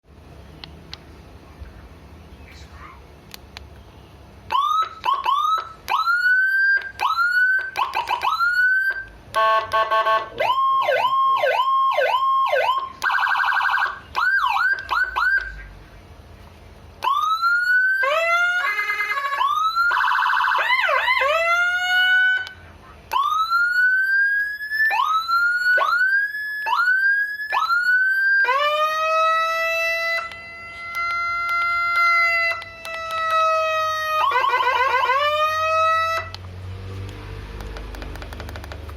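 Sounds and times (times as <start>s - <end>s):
electronic siren: 4.5s - 15.7s, 17.0s - 36.4s.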